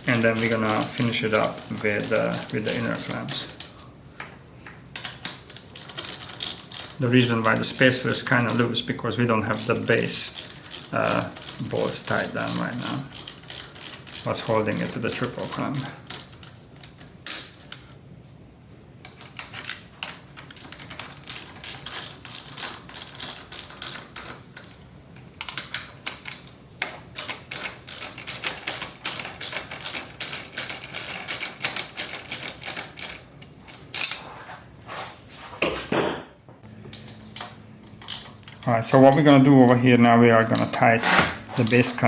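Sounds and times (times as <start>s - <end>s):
hand ratchet clicking: 0.0s - 3.6s, 5.0s - 8.7s, 9.5s - 17.8s.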